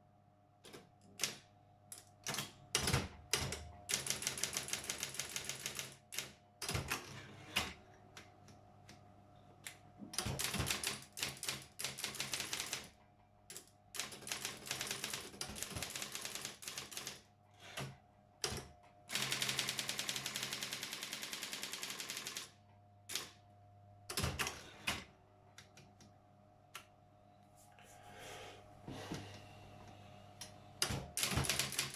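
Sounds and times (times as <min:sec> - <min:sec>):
electric typewriter typing: 0:02.2 - 0:07.8, 0:10.2 - 0:23.4, 0:24.1 - 0:25.1, 0:30.8 - 0:31.9
typewriter motor hum: 0:03.4 - 0:07.8, 0:10.2 - 0:12.9, 0:13.5 - 0:23.4, 0:30.8 - 0:31.9.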